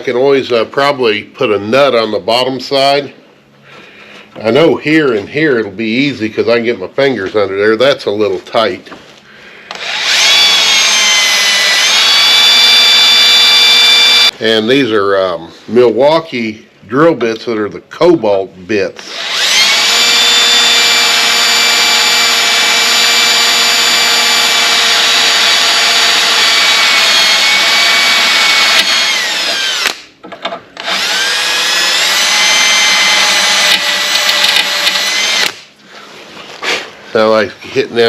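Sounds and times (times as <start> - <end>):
power drill drilling: 9.7 - 14.3, 19.0 - 30.1, 30.8 - 35.7.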